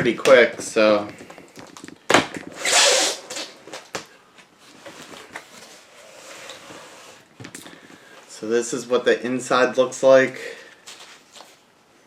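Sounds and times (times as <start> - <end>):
packaging rustling: 1.1 - 8.0.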